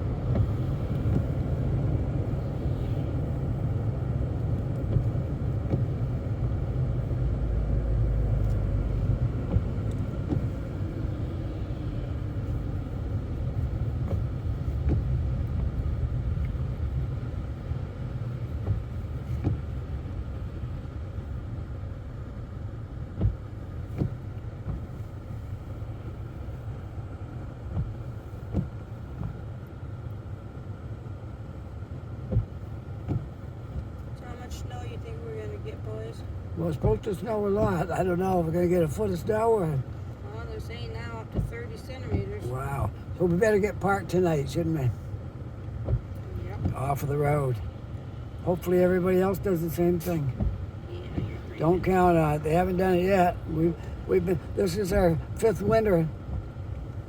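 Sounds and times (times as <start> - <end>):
road and engine rumble in car: 0.0 - 57.0.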